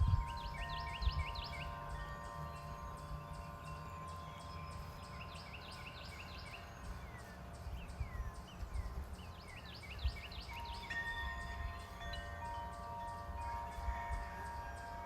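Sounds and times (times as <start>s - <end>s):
wind rumbling on microphone: 0.0s - 3.5s, 6.8s - 15.0s
wind chimes ringing: 0.0s - 8.4s, 10.0s - 15.0s
songbirds chirping: 0.0s - 15.0s.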